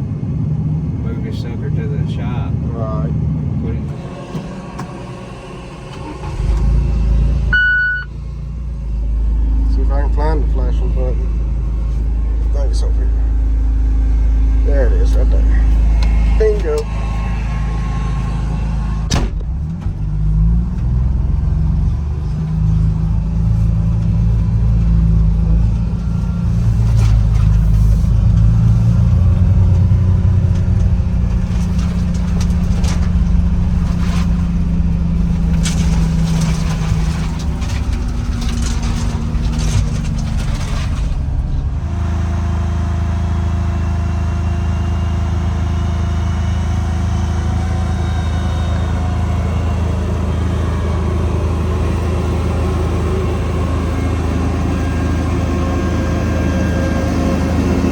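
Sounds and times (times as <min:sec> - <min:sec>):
combine harvester diesel engine: 0:00.0 - 0:57.9
knocks and rattles: 0:13.2 - 0:42.4.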